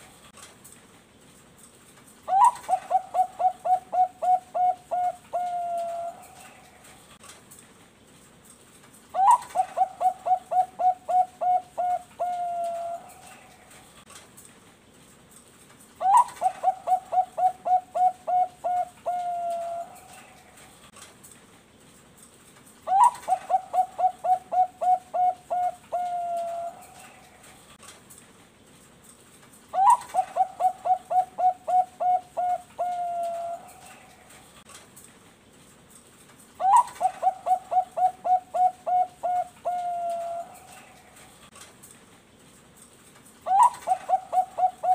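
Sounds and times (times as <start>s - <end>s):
dove cooing: 2.3s - 7.0s, 9.1s - 13.8s, 16.0s - 20.8s, 22.8s - 27.6s, 29.7s - 34.6s, 36.6s - 41.4s, 43.4s - 44.9s.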